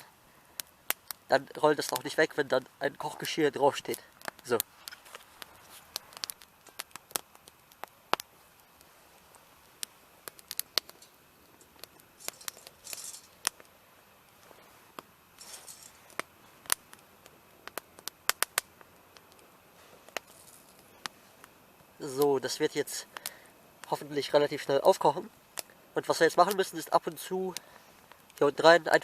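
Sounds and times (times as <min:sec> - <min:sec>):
fire hissing: 0:00.0 - 0:29.0
wood fire crackling: 0:00.0 - 0:29.0.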